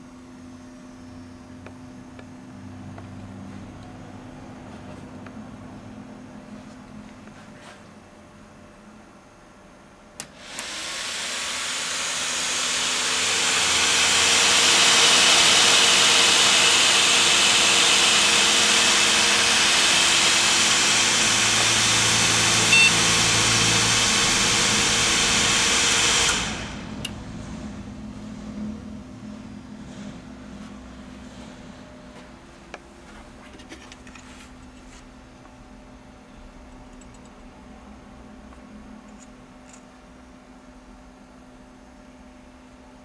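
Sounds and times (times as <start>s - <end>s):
faint hum: 0.0s - 10.4s
loud cooling fan whooshing: 0.0s - 36.7s.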